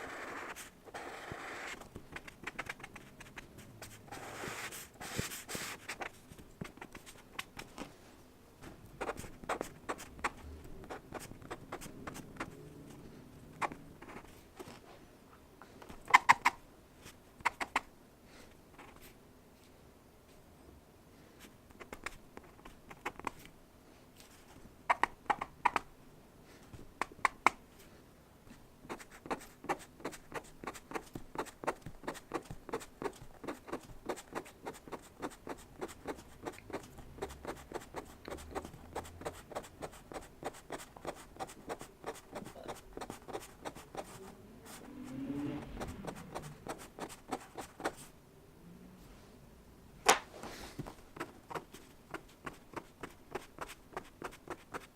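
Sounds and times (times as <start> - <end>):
pen scratching on paper: 0.0 - 7.5, 9.0 - 12.6, 28.9 - 44.9, 45.6 - 48.1, 51.2 - 54.9.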